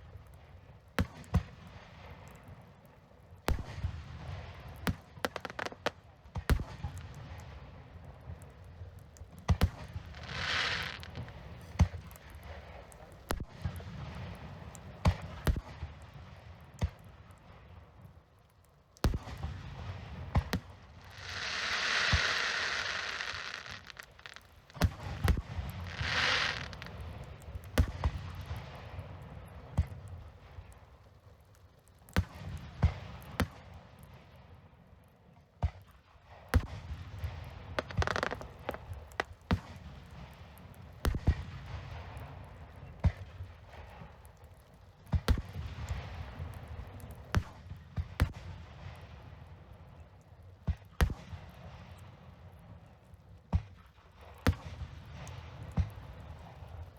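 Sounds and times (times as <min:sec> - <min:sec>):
fireworks bangs: 0:05.0 - 0:06.7, 0:09.5 - 0:14.3, 0:20.0 - 0:28.3, 0:37.6 - 0:40.3
fireworks rushing noise: 0:09.5 - 0:15.5, 0:20.0 - 0:28.3, 0:37.4 - 0:41.4.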